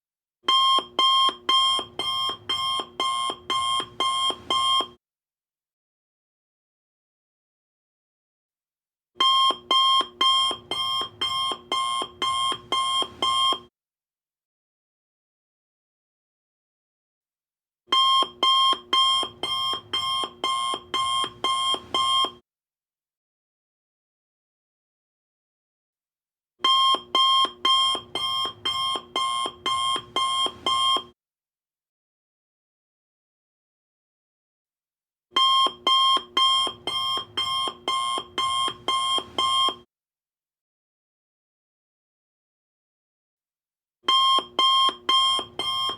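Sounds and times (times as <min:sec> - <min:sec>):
electronic alarm beeping: 0:00.5 - 0:04.9, 0:09.2 - 0:13.6, 0:18.0 - 0:22.4, 0:26.7 - 0:31.1, 0:35.4 - 0:39.8, 0:44.1 - 0:45.9.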